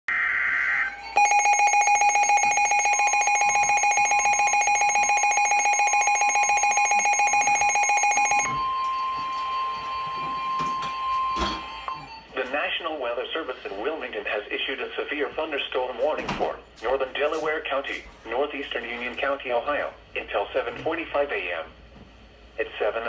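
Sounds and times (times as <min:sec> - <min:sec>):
steady warning alarm tone: 0:00.9 - 0:12.3
rapidly pulsing alarm beep: 0:01.0 - 0:12.3.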